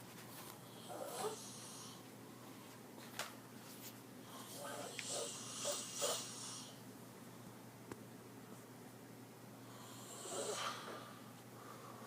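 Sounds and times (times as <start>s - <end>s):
faint breathing of sleeping person: 0.6s - 2.8s, 4.2s - 6.8s, 9.6s - 12.0s.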